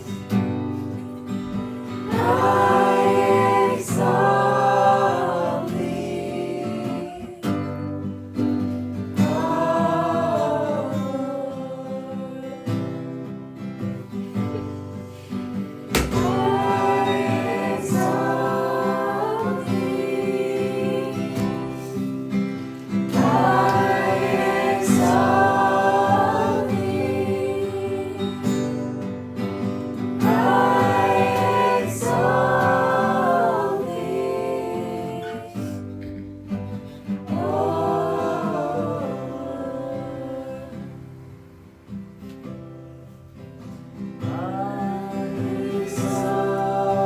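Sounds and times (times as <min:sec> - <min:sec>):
wordless choir-like singing: 0:00.0 - 0:08.1, 0:09.0 - 0:13.1, 0:16.0 - 0:36.2, 0:36.8 - 0:41.4, 0:44.2 - 0:47.0
guitar chords: 0:13.9 - 0:34.4.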